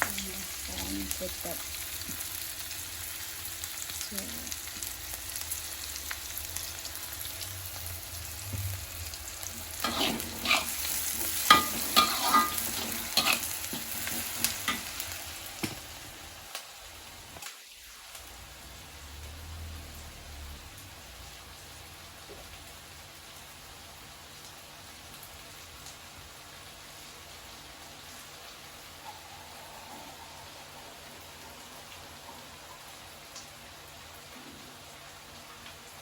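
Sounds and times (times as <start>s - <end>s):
sauce and onions sizzling: 0.0s - 36.0s
metal spatula scraping pan: 9.6s - 15.0s.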